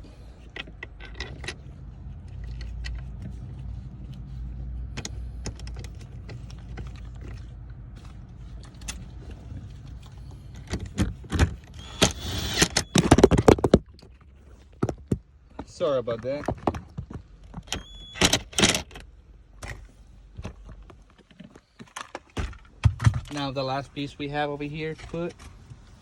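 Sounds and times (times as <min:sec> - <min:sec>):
metal fasteners clicking and rattling: 0:00.4 - 0:03.8, 0:05.0 - 0:09.2, 0:15.6 - 0:19.9.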